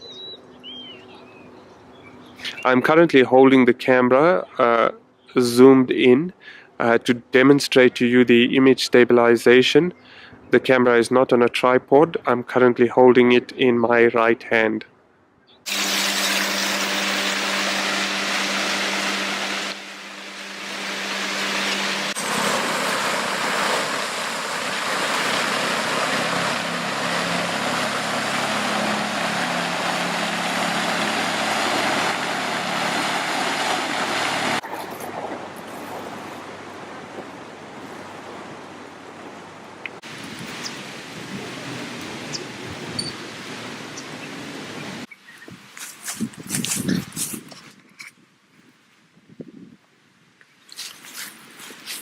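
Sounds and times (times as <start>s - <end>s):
steady hum: 15.7s - 40.2s.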